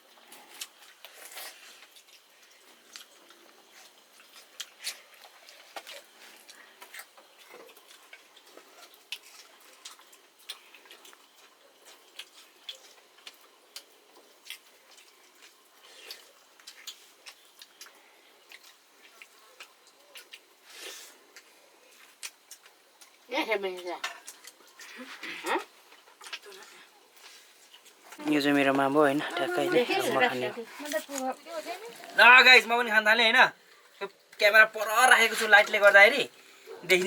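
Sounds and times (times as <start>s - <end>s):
chewing and wet mouth smacks: 0.3s - 23.2s, 24.2s - 28.2s.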